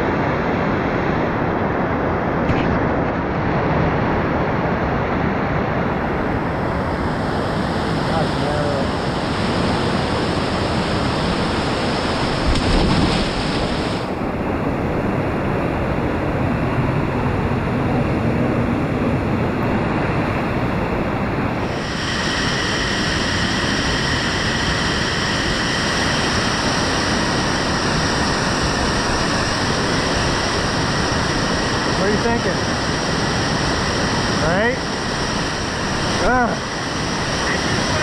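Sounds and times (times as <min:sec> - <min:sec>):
whitewater rapids roaring: 0:20.1 - 0:38.0.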